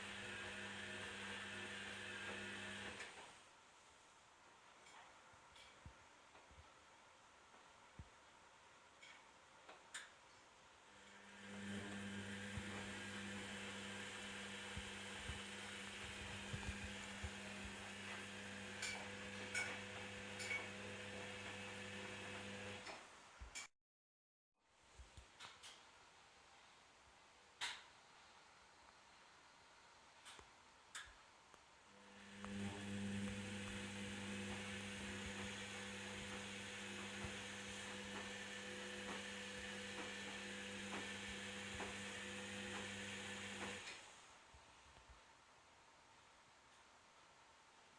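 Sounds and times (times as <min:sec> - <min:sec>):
washing machine humming: 0:00.0 - 0:03.4, 0:10.9 - 0:22.9, 0:32.0 - 0:44.1.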